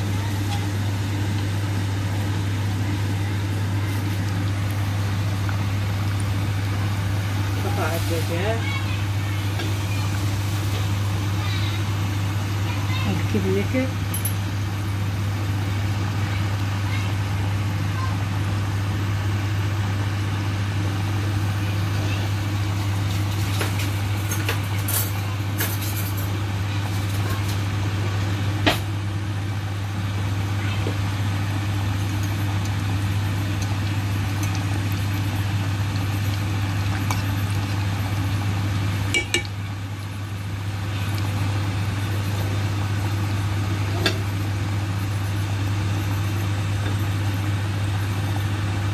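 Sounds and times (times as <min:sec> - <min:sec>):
food sizzling in hot oil: 0:31.0 - 0:48.8.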